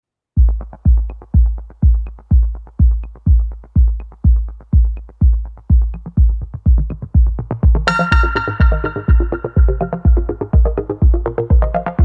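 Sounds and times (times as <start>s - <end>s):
bass kick drum: 0.4s - 12.0s
electronic music: 0.4s - 12.0s
hi-hat ticks: 0.5s - 11.4s
synth melody: 7.9s - 11.4s.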